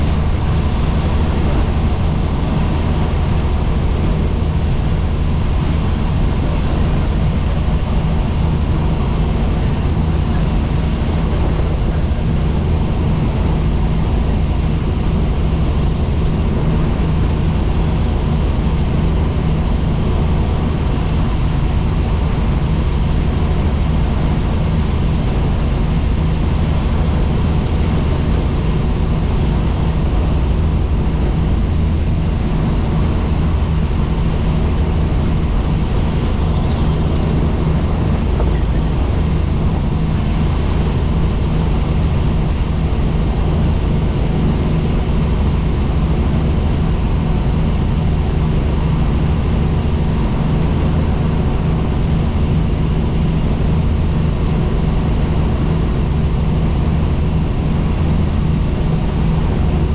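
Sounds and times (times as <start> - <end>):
helicopter engine and rotor: 0.0 - 59.9.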